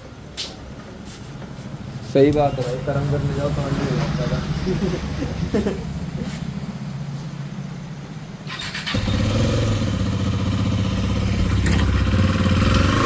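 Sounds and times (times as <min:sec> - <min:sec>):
motorcycle engine starting and running: 0:08.4 - 0:13.0.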